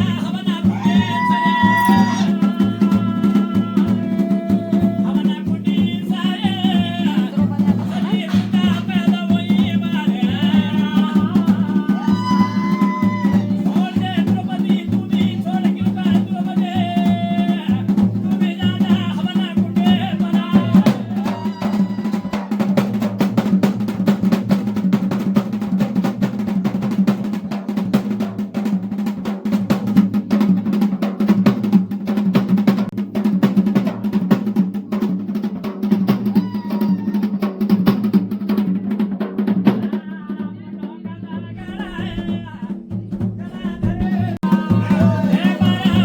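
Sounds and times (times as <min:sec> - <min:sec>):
voices: 0:00.0 - 0:22.7, 0:43.4 - 0:46.0
fast drums beating: 0:00.0 - 0:46.0.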